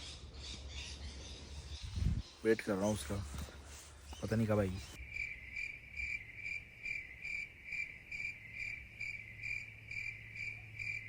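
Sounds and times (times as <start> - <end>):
cricket chirping: 4.8 - 11.0.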